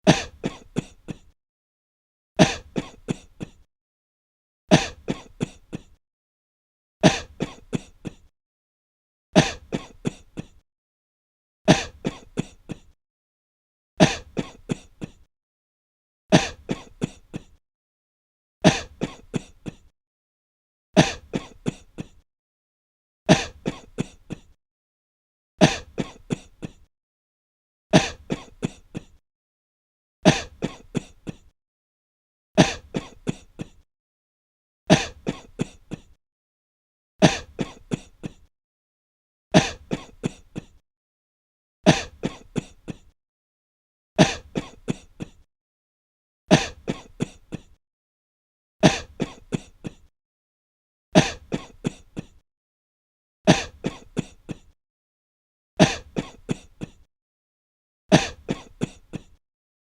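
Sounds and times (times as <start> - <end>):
person coughing: 0.0 - 1.4, 2.4 - 3.7, 4.7 - 6.0, 7.0 - 8.3, 9.4 - 10.6, 11.7 - 13.0, 14.0 - 15.3, 16.3 - 17.6, 18.7 - 19.9, 21.0 - 22.2, 23.3 - 24.6, 25.6 - 26.9, 28.0 - 29.2, 30.2 - 31.5, 32.6 - 33.8, 34.9 - 36.2, 37.2 - 38.5, 39.6 - 40.8, 41.9 - 43.2, 44.2 - 45.5, 46.5 - 47.8, 48.8 - 50.1, 51.2 - 52.4, 53.5 - 54.8, 55.8 - 57.1, 58.1 - 59.4.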